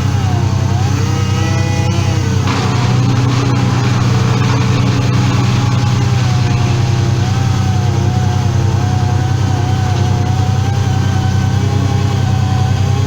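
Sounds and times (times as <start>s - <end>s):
engine running with whine: 0.0s - 13.0s.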